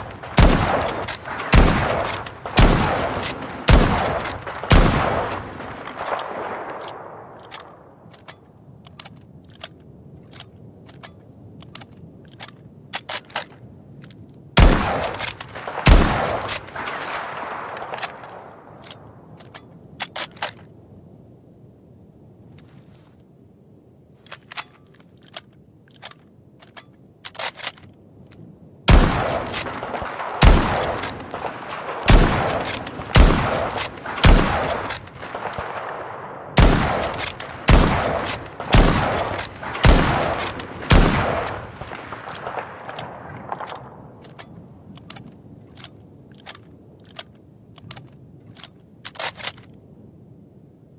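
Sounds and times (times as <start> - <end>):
rifle shots echoing: 0.0 - 7.9, 14.6 - 18.7, 28.9 - 44.4
sharp clicks: 36.6 - 49.8.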